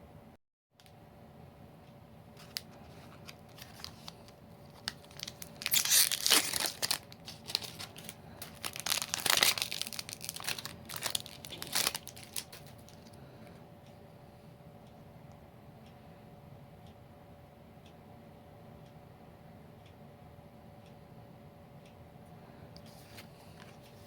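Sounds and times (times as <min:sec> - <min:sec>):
foil wrapper crackling: 0:02.4 - 0:13.2.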